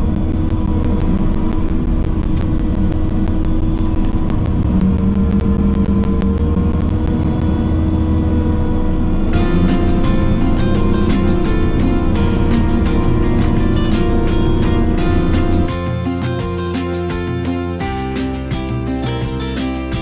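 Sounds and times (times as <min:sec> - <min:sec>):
fast even ticking: 0:00.0 - 0:08.2
diesel engine running: 0:00.0 - 0:19.6.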